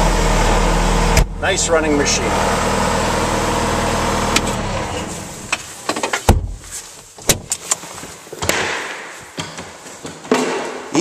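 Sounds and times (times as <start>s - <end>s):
diesel engine cutting off: 0.0s - 5.6s.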